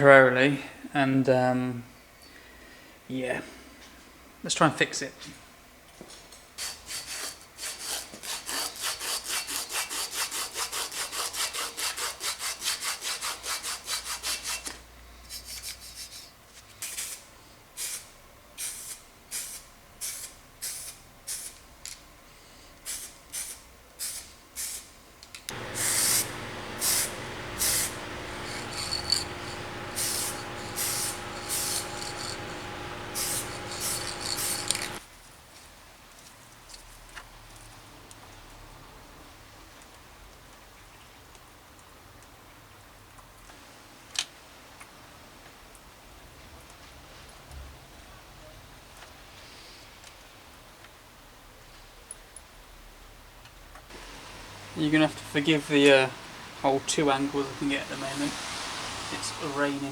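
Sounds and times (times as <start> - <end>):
hand sanding steel: 6.6 - 14.7, 25.5 - 35.0
steady hum with held tones: 25.5 - 35.0.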